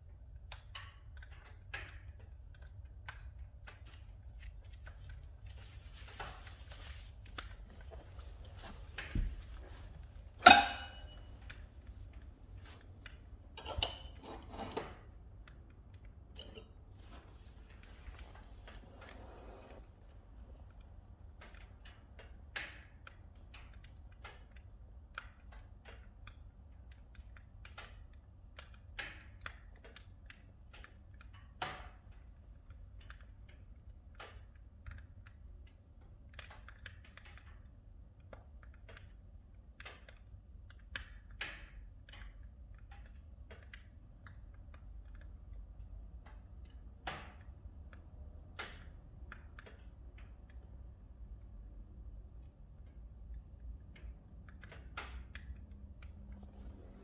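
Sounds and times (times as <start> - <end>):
low stove rumble: 5.6 - 21.9.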